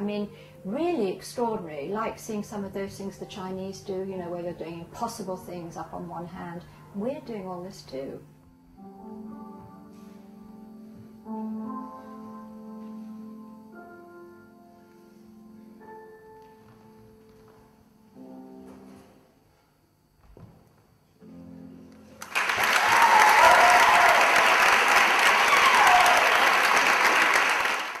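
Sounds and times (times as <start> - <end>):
soft held music notes: 0.0 - 19.8
audience applause: 22.2 - 28.0.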